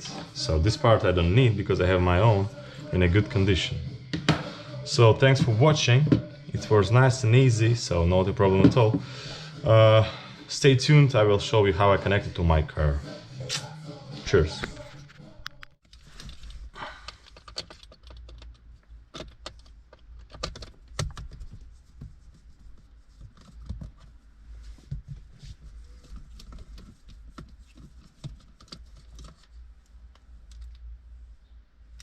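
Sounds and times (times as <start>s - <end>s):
plastic parts clicking and tapping: 15.5s - 21.4s.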